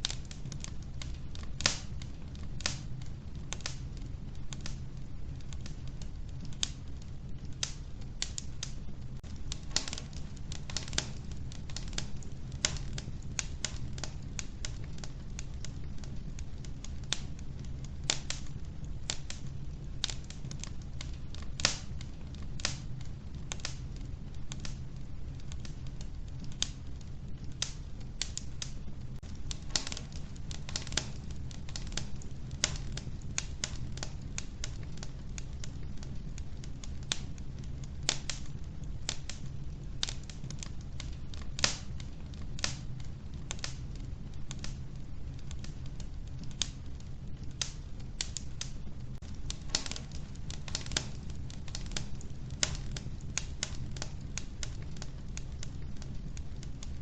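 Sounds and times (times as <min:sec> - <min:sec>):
low stove rumble: 0:00.0 - 0:57.0
wood fire crackling: 0:00.0 - 0:57.0.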